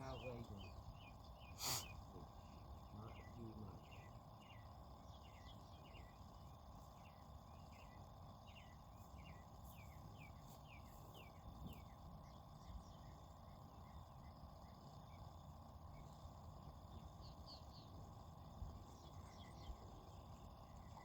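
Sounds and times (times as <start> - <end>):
insect drone: 0.0 - 21.0
bird chirping: 16.9 - 18.0, 18.8 - 21.0.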